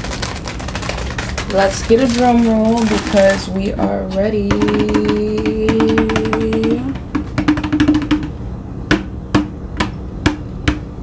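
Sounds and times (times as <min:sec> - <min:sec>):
hand drumming on hard surface: 0:03.8 - 0:11.0.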